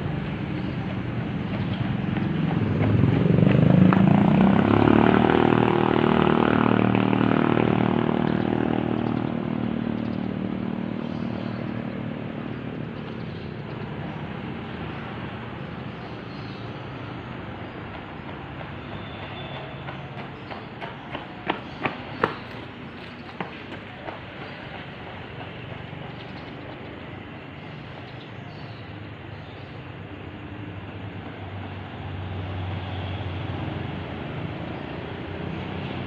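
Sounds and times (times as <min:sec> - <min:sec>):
vehicle engine passing by: 0:01.3 - 0:16.8, 0:30.8 - 0:36.0.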